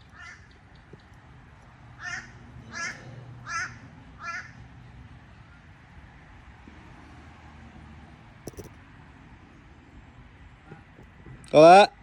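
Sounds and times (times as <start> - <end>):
crow cawing: 0.0 - 0.5, 2.0 - 4.6.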